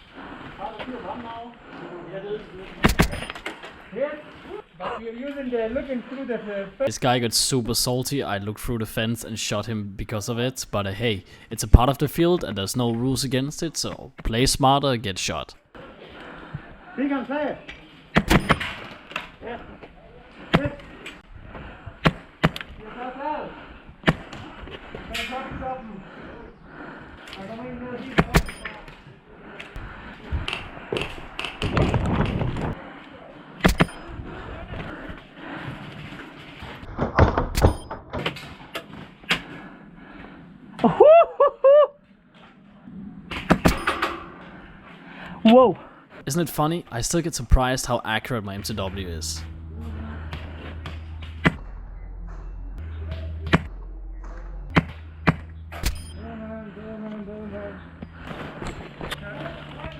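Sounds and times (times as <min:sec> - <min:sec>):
low steady hum: 0:46.3 - 0:59.9.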